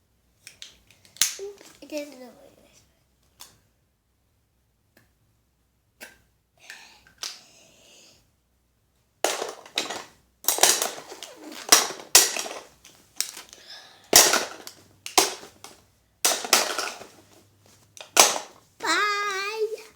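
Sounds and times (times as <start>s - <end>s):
noisy breath bursts: 13.6s - 14.2s.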